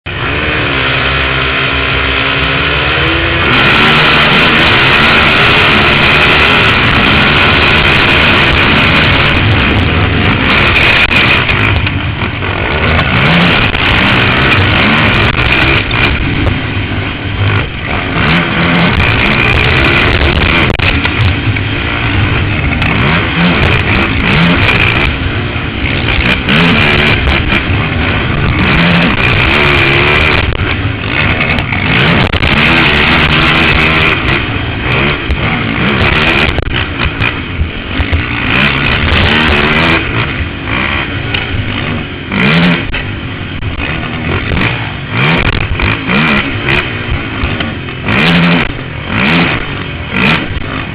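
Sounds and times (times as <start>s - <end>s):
atv engine revving: 0.0s - 50.9s.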